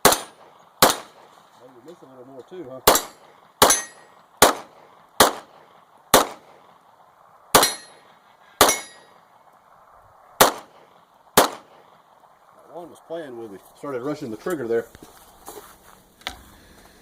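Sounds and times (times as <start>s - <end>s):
pistol shots: 0.0s - 1.4s, 2.8s - 6.8s, 7.5s - 9.2s, 10.4s - 12.0s
steel plate ringing: 2.9s - 4.1s, 7.6s - 8.0s, 8.6s - 9.1s.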